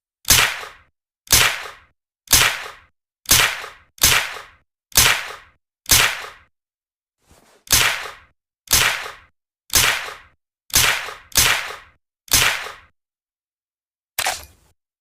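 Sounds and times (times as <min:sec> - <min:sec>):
suppressed gunshots: 0:07.7 - 0:12.9.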